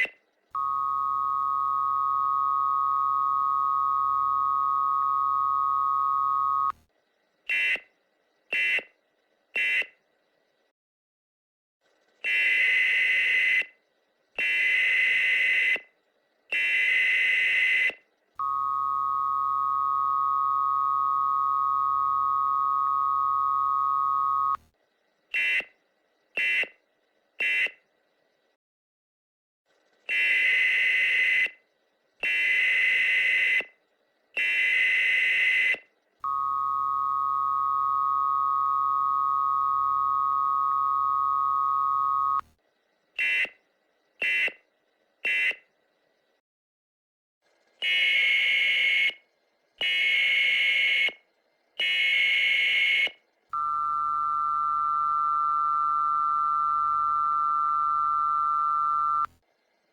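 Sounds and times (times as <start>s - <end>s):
two-tone attention signal: 53.6s - 59.3s.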